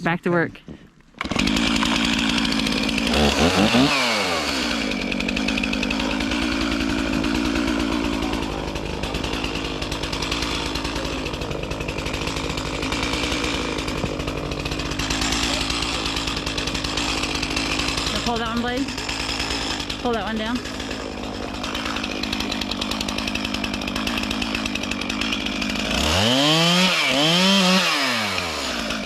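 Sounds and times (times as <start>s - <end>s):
chainsaw running at high speed: 1.2s - 29.0s.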